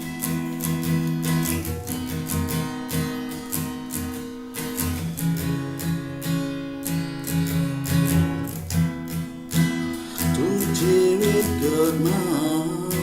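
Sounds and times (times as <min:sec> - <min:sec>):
guitar strummed rhythmically: 0:00.0 - 0:13.0.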